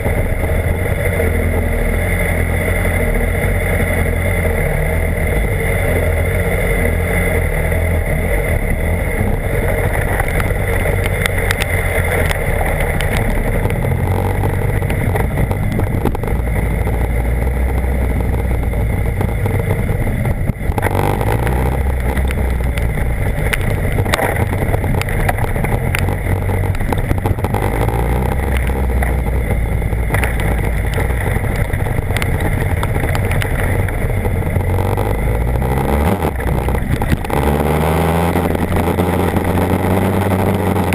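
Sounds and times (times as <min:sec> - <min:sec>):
motorcycle engine running: 0:00.0 - 0:40.9
wind and road noise: 0:00.0 - 0:40.9.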